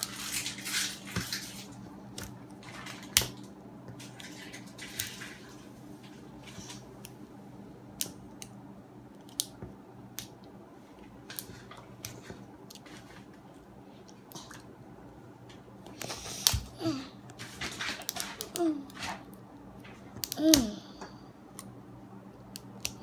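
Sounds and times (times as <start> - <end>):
plastic packaging crinkling and tearing: 0.0 - 1.8.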